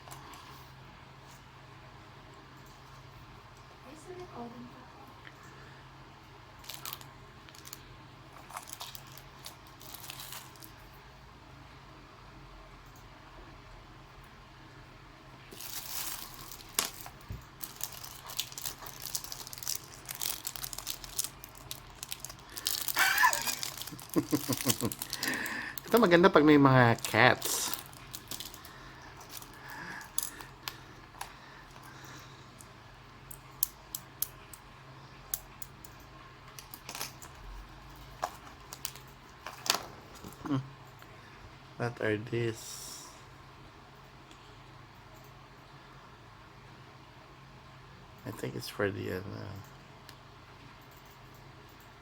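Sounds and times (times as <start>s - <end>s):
steady low hum: 0.0s - 52.0s
plastic packaging crinkling: 6.6s - 10.8s, 15.5s - 32.0s, 36.6s - 40.5s
small hard parts clicking: 27.0s - 31.9s.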